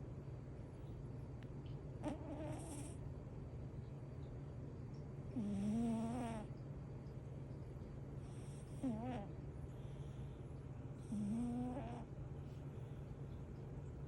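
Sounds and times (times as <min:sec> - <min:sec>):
cat snoring: 0:02.0 - 0:03.0, 0:05.4 - 0:06.5, 0:08.2 - 0:10.0, 0:11.0 - 0:12.1.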